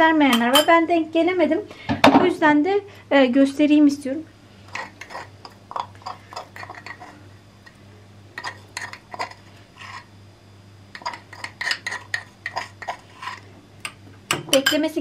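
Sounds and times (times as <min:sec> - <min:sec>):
utensil clinking against dish: 0:00.3 - 0:00.7, 0:11.0 - 0:15.0.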